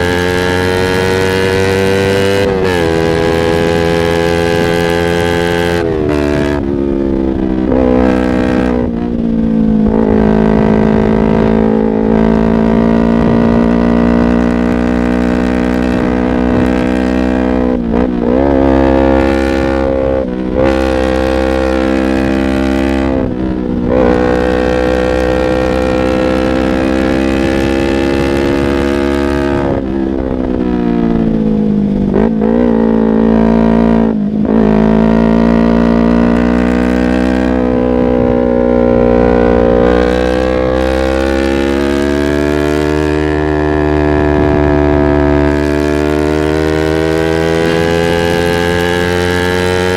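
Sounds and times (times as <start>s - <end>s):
motorcycle engine while riding: 0.0s - 49.9s.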